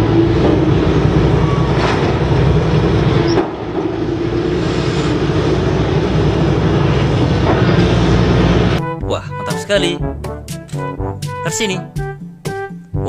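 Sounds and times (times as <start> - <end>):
excavator engine rumbling: 0.0 - 11.4.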